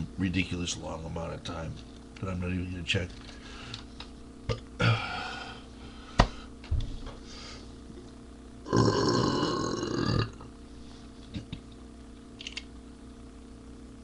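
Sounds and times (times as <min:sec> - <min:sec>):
man belching: 0:08.6 - 0:10.5.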